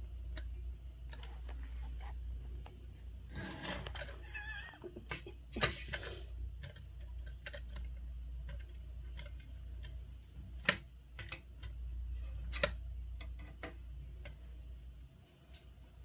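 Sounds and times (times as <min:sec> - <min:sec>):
steady low hum: 0:00.0 - 0:16.0
light clicks and taps: 0:00.2 - 0:02.8.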